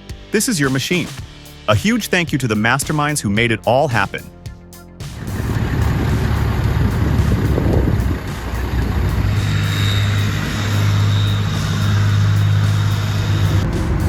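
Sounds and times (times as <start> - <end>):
heavy vehicle engine drone: 5.0 - 14.0
thin high whine: 5.0 - 14.0.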